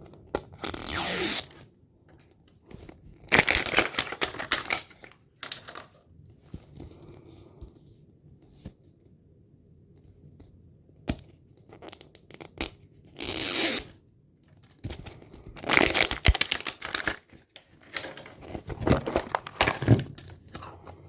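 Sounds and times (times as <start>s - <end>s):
plastic packaging ripping: 3.3s - 5.9s, 15.6s - 20.2s
plastic packaging crinkling: 3.3s - 6.0s, 15.5s - 21.0s.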